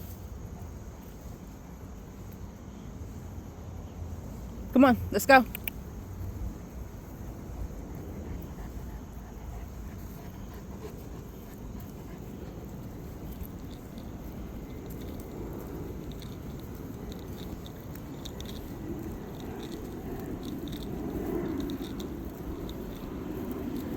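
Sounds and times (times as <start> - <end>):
low background noise: 0.0 - 23.9
light clicks: 5.4 - 5.8, 11.1 - 23.9
puppy chewing: 7.3 - 23.9.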